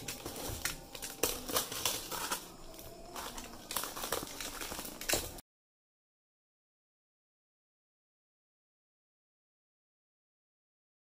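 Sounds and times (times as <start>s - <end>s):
packaging crinkling and rustling: 0.0s - 5.4s.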